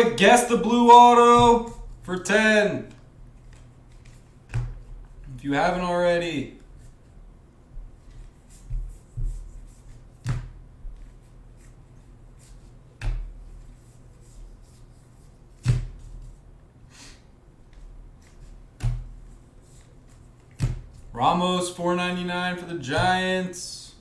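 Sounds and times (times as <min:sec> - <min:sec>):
cards tapping on a tabletop: 0:03.4 - 0:04.9, 0:08.0 - 0:11.2, 0:15.6 - 0:16.2.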